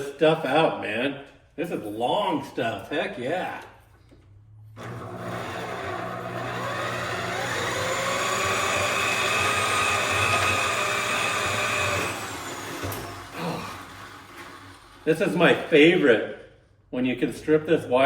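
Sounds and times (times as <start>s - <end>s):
electric motor whining: 4.8s - 14.7s.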